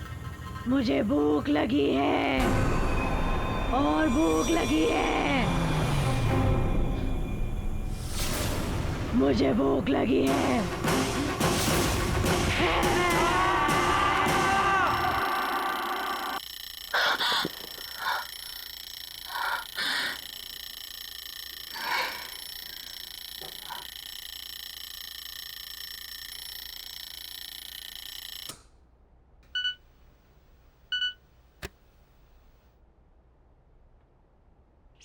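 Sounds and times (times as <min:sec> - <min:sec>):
eerie horror drone: 0:00.0 - 0:16.4
sharp musical stabs: 0:02.4 - 0:16.4
short electronic beeps: 0:29.6 - 0:29.8, 0:30.9 - 0:31.2.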